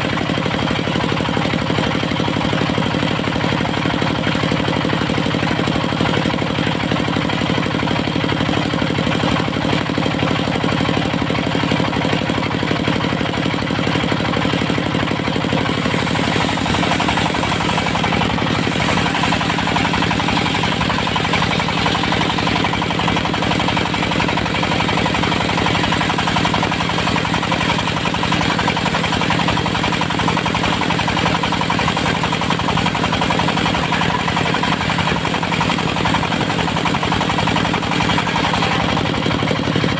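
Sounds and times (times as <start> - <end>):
diesel engine chugging: 0.0 - 39.9
saw blade cutting wood: 15.4 - 39.6.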